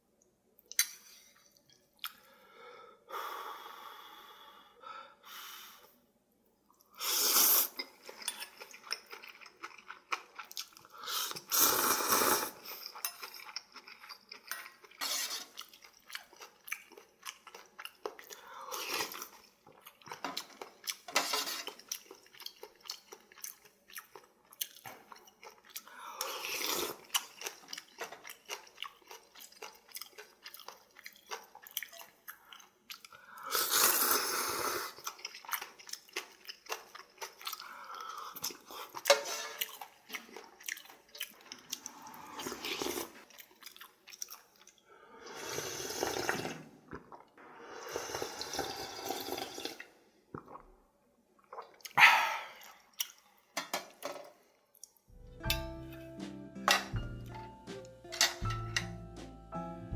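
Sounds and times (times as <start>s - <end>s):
wet chewing with mouth clicks: 7.8s - 11.5s, 12.6s - 21.1s, 21.7s - 33.2s, 35.0s - 44.9s, 51.4s - 53.4s.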